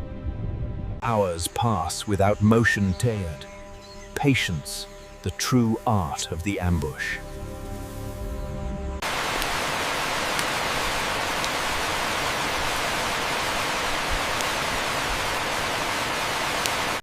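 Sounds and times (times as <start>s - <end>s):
rushing hiss of falling water: 9.0s - 17.0s.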